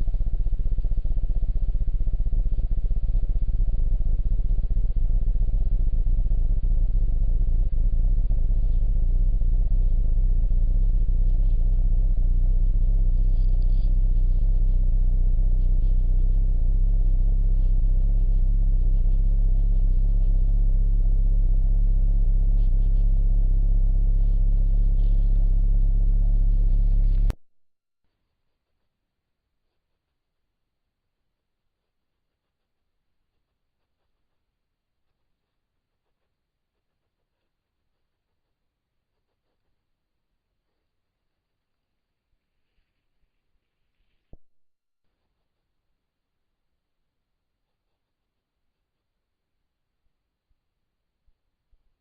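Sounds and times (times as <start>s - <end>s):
low engine rumble: 0.0s - 27.4s.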